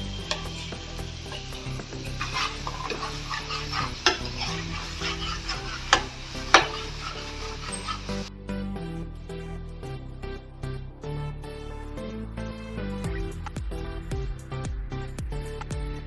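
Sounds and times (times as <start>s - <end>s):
masala sizzling in pan: 0.0s - 8.3s.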